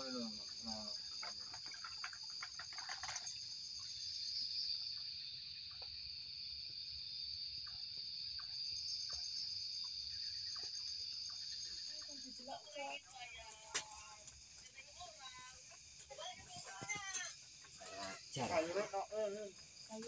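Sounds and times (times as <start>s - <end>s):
crickets trilling: 0.0s - 20.0s
faint scattered ticks: 0.0s - 20.0s
clattering or rustling: 0.9s - 3.6s.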